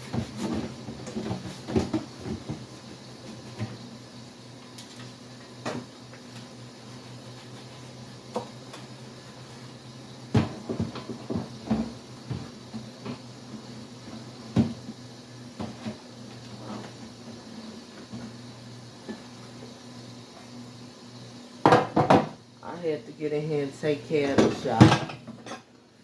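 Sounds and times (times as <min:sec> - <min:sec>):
dishes clattering: 0:24.4 - 0:25.7.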